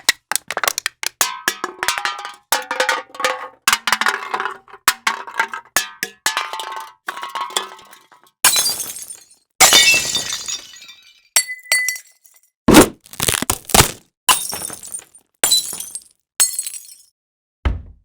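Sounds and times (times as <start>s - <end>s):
heavy thuds: 17.6s - 18.0s.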